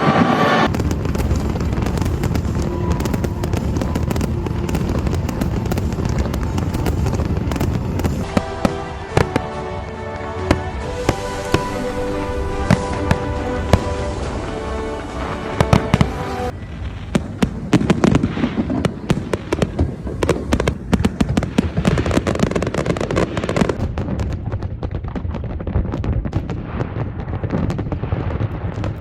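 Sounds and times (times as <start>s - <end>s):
music: 0.0s - 16.6s
deep fireworks booms: 0.0s - 29.0s
fireworks bangs and crackles: 0.0s - 29.0s.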